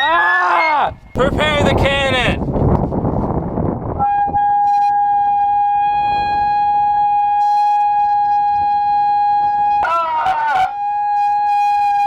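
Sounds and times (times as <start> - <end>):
megaphones blaring high tone: 4.0 - 12.0.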